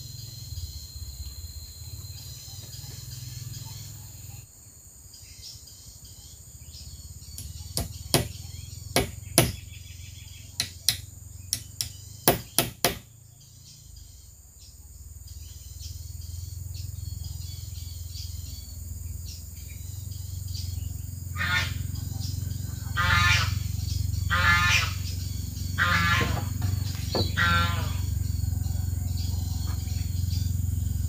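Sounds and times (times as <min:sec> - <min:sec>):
sharp hammer knocks: 0:07.8 - 0:08.4, 0:09.0 - 0:09.6.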